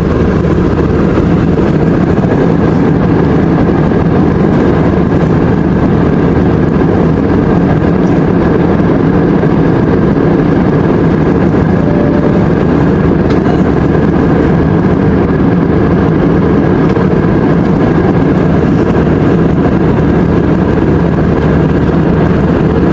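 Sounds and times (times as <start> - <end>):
airliner cabin roar: 0.0 - 22.9
faint high steady tone: 11.7 - 12.6.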